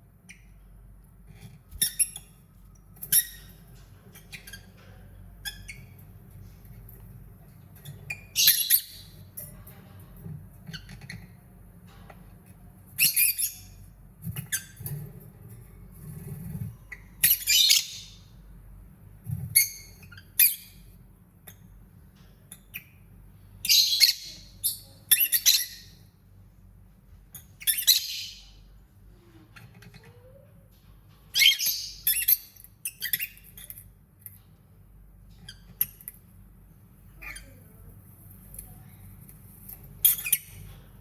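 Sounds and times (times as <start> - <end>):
bird chirping and squawking: 8.1 - 9.2, 16.9 - 18.3, 23.6 - 26.0, 27.6 - 28.6, 31.3 - 33.4.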